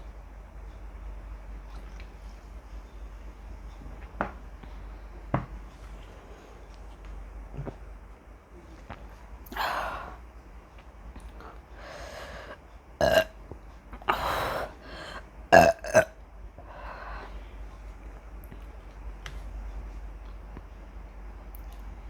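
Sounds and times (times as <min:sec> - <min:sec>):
woman burping: 0:13.0 - 0:13.3, 0:15.5 - 0:16.2.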